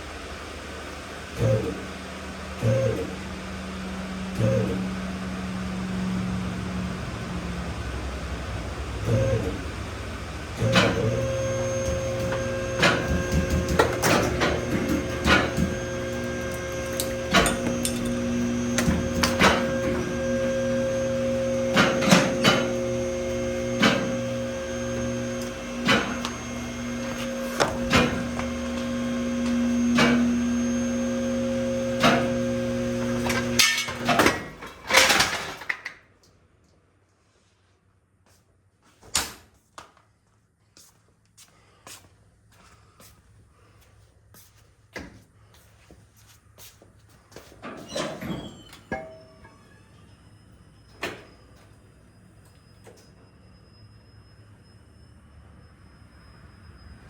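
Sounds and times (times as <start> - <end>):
electric pump motor humming: 0.3 - 33.6.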